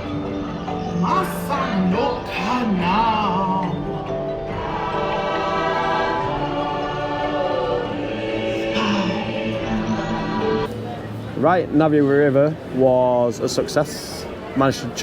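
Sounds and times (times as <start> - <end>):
choir singing long notes: 0.0 - 10.7
sustained musical backing: 0.0 - 15.0.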